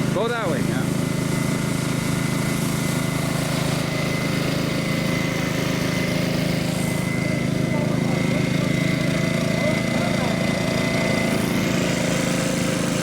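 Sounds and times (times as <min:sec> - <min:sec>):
engine running steadily: 0:00.0 - 0:13.0
faint high whine: 0:03.0 - 0:11.6.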